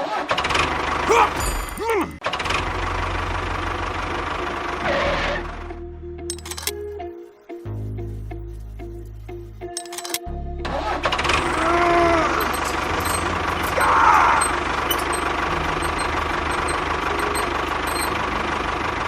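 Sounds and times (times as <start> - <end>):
small machine rattling: 6.3 - 6.8, 9.7 - 10.2, 11.3 - 19.0
brief squeals: 11.4 - 18.4.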